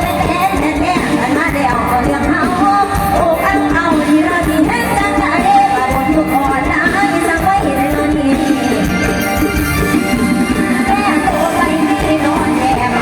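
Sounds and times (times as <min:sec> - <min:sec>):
band playing: 0:00.0 - 0:13.0
person singing: 0:10.4 - 0:13.0.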